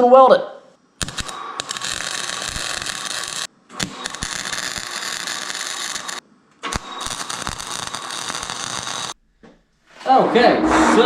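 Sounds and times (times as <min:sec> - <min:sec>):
arc welder hissing: 0:01.0 - 0:09.2.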